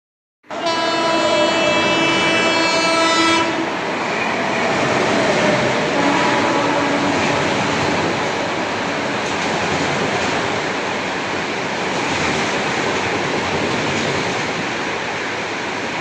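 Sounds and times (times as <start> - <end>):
train horn blast: 0.4 - 8.0
moving train noise: 0.5 - 16.0.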